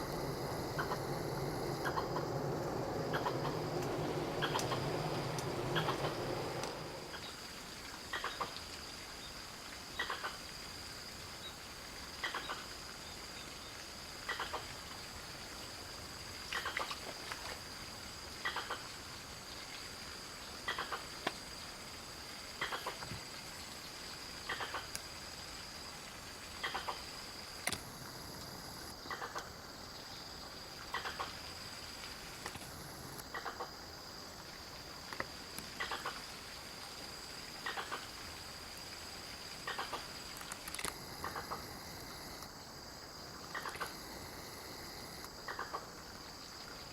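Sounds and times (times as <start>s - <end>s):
animal calling: 0.0s - 7.2s.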